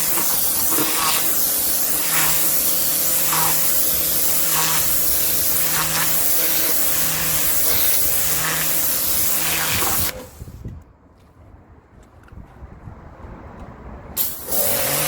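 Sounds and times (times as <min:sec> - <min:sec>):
pressure washer spraying water: 0:00.0 - 0:10.4, 0:14.2 - 0:15.0
pump motor hum: 0:00.0 - 0:10.4, 0:14.2 - 0:15.0.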